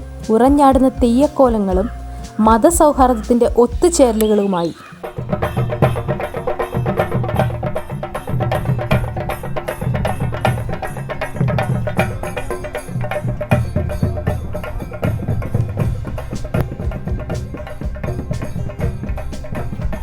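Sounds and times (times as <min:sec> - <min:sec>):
sustained bass notes: 0:00.0 - 0:20.0
wooden percussion beat: 0:00.0 - 0:20.0.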